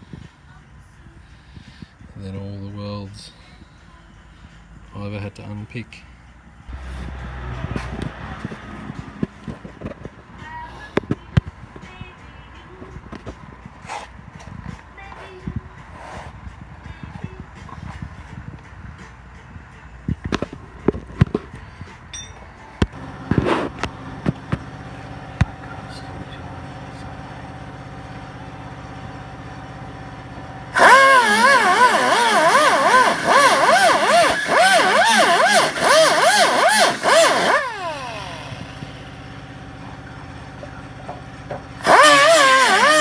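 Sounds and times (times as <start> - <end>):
power tool cutting metal: 30.8 - 38.7, 41.8 - 43.0.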